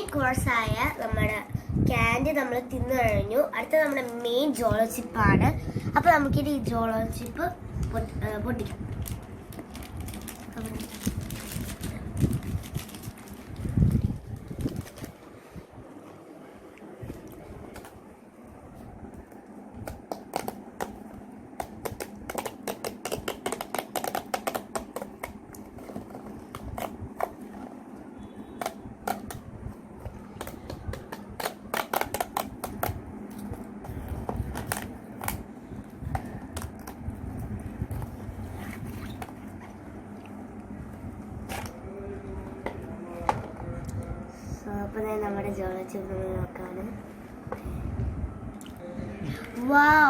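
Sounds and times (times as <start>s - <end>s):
chip packaging crinkling: 9.0s - 15.3s.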